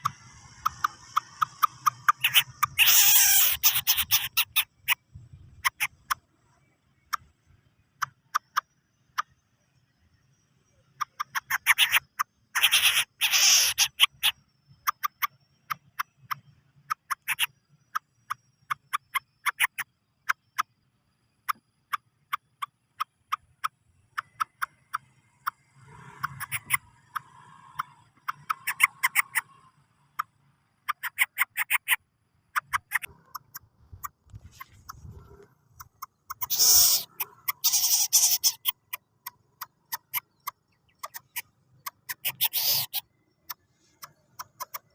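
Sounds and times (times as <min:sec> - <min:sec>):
bird clicking call: 0:00.0 - 0:05.0, 0:11.0 - 0:20.7, 0:26.2 - 0:29.6, 0:30.9 - 0:32.0, 0:32.6 - 0:44.9.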